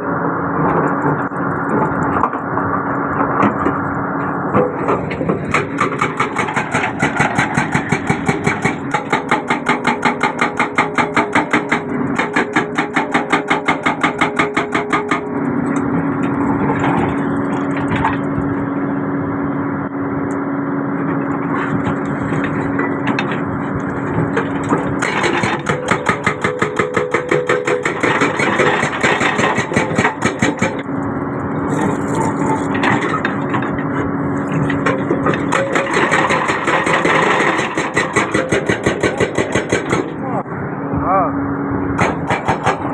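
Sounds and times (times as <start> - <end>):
excavator engine running: 0.0 - 42.9
hydraulic breaker hammering: 4.6 - 15.9, 24.2 - 30.9, 34.5 - 40.3, 42.0 - 42.9.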